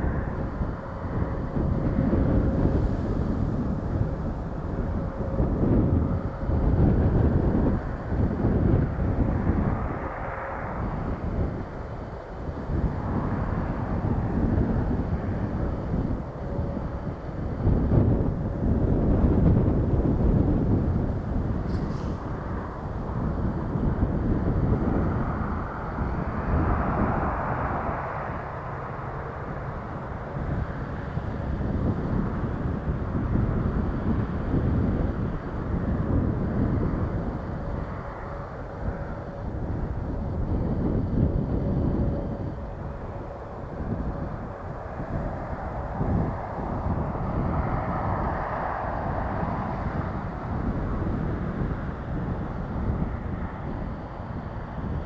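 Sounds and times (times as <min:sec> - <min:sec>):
jet airliner engine: 0:00.0 - 0:55.0
wind buffeting microphone: 0:00.0 - 0:55.0.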